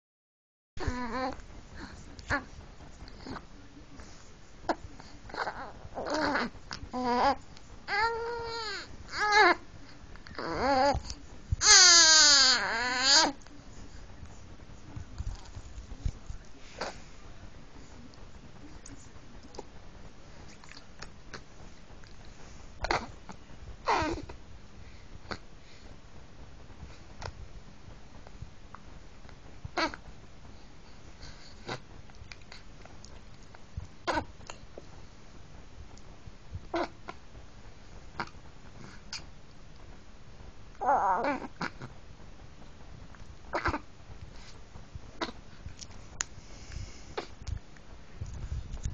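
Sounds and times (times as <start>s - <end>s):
baby squeaky vocal noise: 11.6s - 13.4s
baby grunting: 23.8s - 24.4s, 40.8s - 41.9s, 43.5s - 43.9s.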